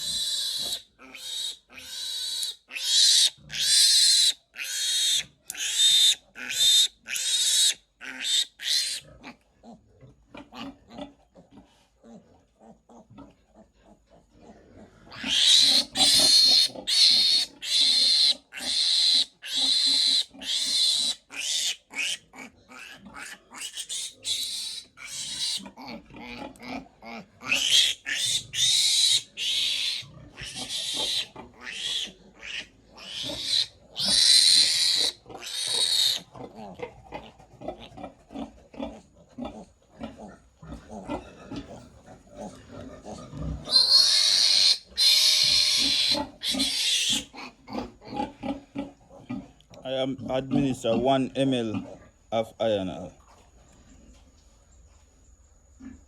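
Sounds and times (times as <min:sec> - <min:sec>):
piglet screaming: 0:00.0 - 0:09.0, 0:15.1 - 0:36.3, 0:43.6 - 0:47.9
piglet squeals and grunts: 0:00.0 - 0:09.8, 0:10.4 - 0:11.2, 0:12.0 - 0:51.1.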